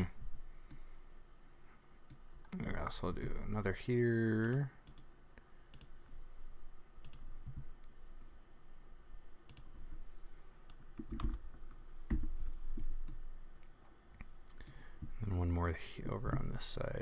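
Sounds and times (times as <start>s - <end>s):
keyboard presses: 11.0s - 11.4s.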